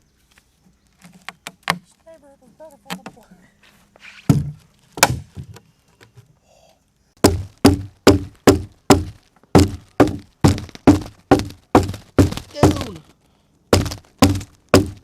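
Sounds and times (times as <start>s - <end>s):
tool chopping into wood: 4.3s - 5.4s, 7.2s - 13.0s, 13.7s - 15.0s.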